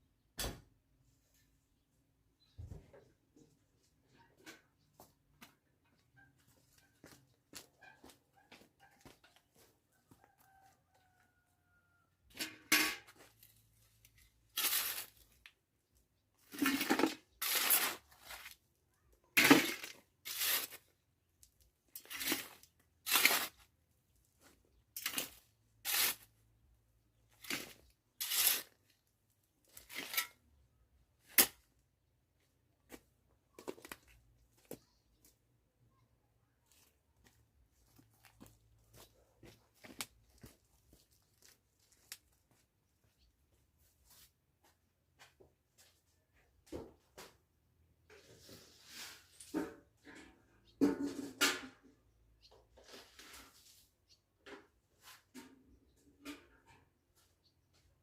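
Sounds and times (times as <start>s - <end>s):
scraping tearing strokes: 14.6s - 15.3s, 16.6s - 18.6s, 19.4s - 20.9s, 22.0s - 23.6s, 25.0s - 26.3s, 27.4s - 28.8s.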